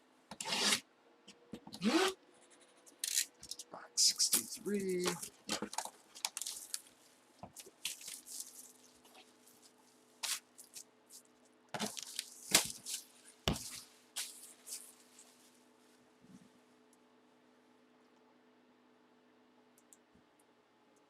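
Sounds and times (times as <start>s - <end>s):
faint steady hum: 0.0s - 21.0s
packaging torn and crinkled: 4.4s - 7.0s, 7.6s - 10.8s, 11.8s - 13.1s.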